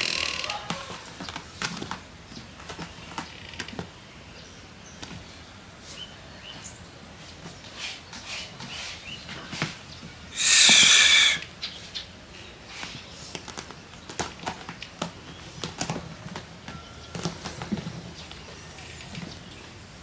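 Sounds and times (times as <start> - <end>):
cat hissing: 10.3 - 11.5.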